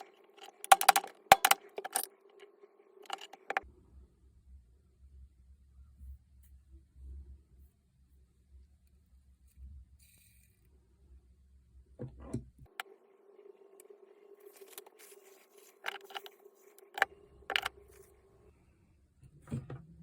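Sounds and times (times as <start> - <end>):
clicks and knocks of tool parts: 0.0 - 2.1, 3.0 - 3.6, 15.8 - 17.7
faint steady hum: 0.0 - 20.0.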